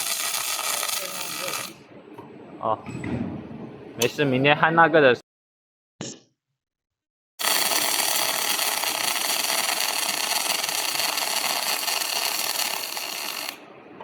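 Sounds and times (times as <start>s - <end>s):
welding arc hissing: 0.0s - 1.8s, 7.4s - 13.6s.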